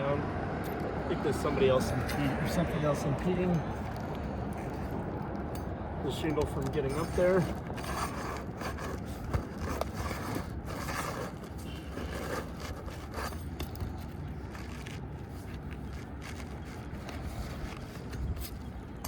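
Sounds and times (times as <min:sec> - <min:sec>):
shingle scraping and rustling: 0:03.0 - 0:05.2, 0:06.1 - 0:19.0.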